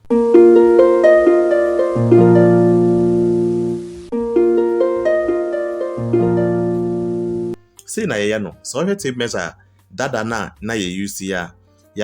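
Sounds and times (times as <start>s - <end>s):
plucked harp-like melody: 0.1s - 7.6s.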